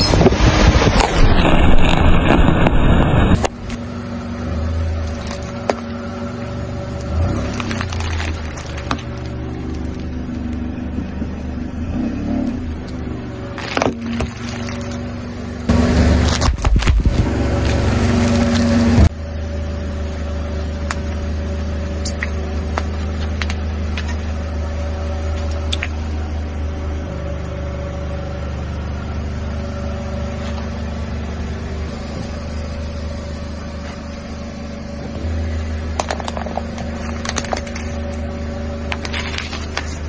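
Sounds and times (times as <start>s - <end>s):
car engine running: 0.0s - 40.0s
objects crushed under tyres: 16.1s - 19.1s.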